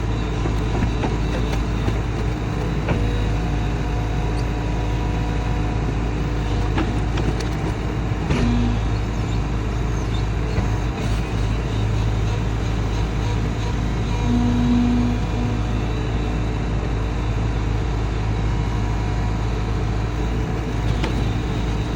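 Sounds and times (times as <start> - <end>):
excavator diesel engine running: 0.0 - 21.9
brief steady tone: 8.3 - 9.4, 13.6 - 17.1.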